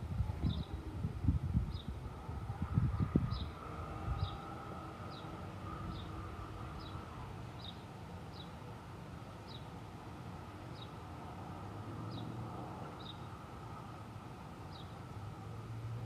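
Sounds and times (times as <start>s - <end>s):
wind rumbling: 0.0s - 7.4s.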